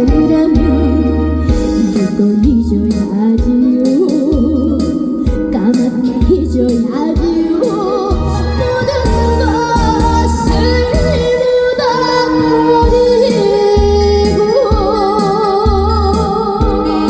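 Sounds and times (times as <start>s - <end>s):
music with bass beat: 0.0s - 11.4s
woman singing: 0.0s - 17.0s.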